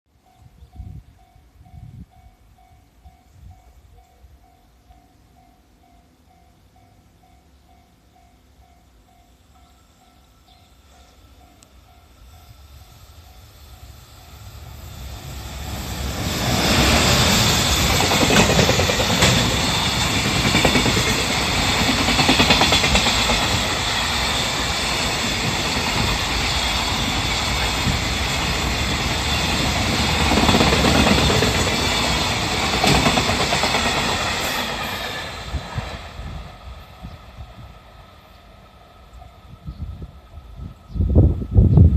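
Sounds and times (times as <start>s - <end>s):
freight train passing: 0.1s - 41.9s
wheels clattering over rails: 16.4s - 35.0s.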